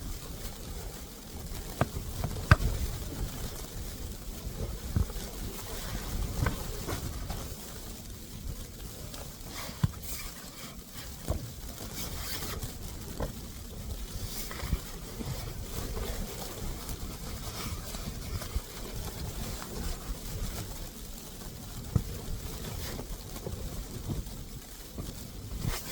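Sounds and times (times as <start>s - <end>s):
wind buffeting microphone: 0.0s - 25.9s
short knocks and rustles: 1.6s - 3.3s.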